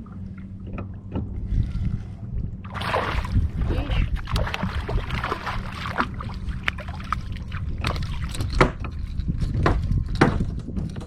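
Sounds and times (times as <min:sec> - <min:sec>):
water sloshing against kayak hull: 0:00.0 - 0:10.9
low rumble: 0:00.0 - 0:11.0
sharp knocks and clicks: 0:00.6 - 0:01.4, 0:07.8 - 0:11.0.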